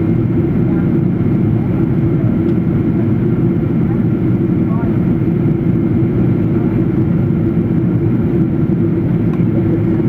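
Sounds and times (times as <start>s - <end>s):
airliner engine rumble: 0.0s - 10.0s.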